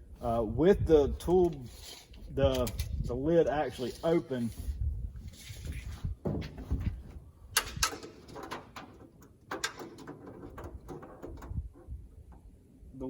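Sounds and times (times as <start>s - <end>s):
sharp clicks and knocks: 7.5s - 12.6s.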